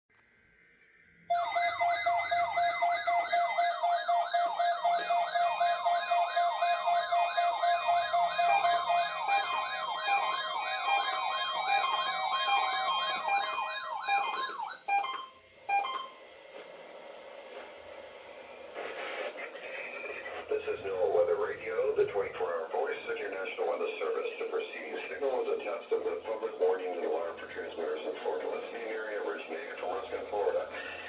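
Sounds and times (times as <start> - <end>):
siren-like alert alarm yelping: 1.3 - 16.1
steady alarm tone: 1.3 - 16.3.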